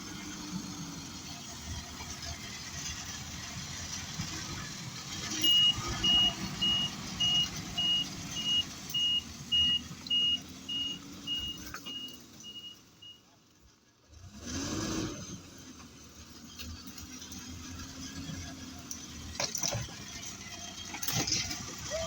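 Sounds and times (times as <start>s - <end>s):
diesel truck engine running: 0.0s - 22.0s
reversing alarm beeping: 5.3s - 13.2s.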